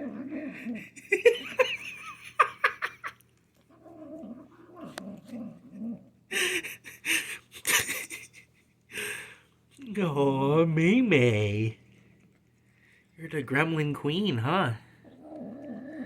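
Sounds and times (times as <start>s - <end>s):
kitten growling while eating: 0.0s - 1.7s, 3.6s - 6.2s, 14.9s - 16.0s.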